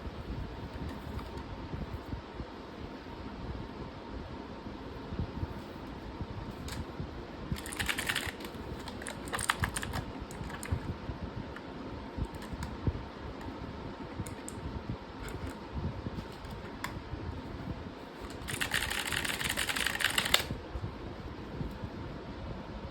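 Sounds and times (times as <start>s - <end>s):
mechanical keyboard typing: 7.6s - 10.9s, 12.3s - 12.7s, 18.2s - 20.6s.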